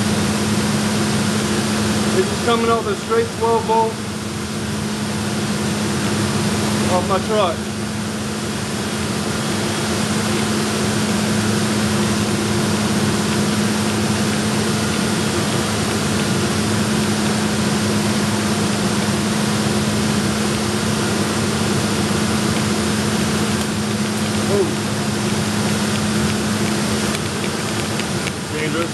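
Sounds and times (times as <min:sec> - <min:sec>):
steady low hum: 0:00.0 - 0:28.9
torch flame hissing: 0:00.0 - 0:28.9.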